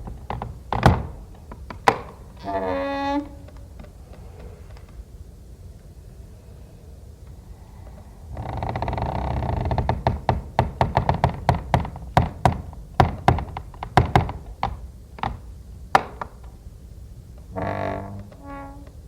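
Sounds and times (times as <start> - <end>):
wooden door snapping and popping: 0.0 - 2.2
door creak: 0.0 - 5.0, 8.4 - 11.4, 17.5 - 19.0.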